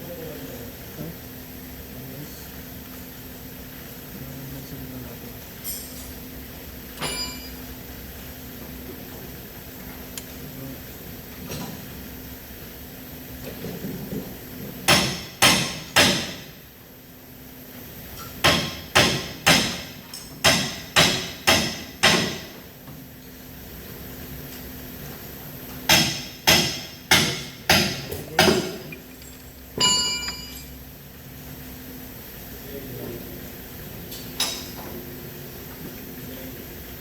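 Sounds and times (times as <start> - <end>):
short metallic ring: 7.0 - 7.6, 29.8 - 30.8
sharp hammer strikes: 14.9 - 16.5, 18.4 - 22.6, 25.9 - 28.8.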